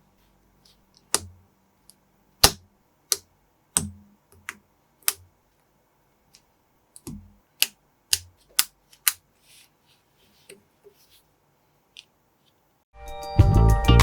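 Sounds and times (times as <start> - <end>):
soft rustle: 9.3 - 12.8.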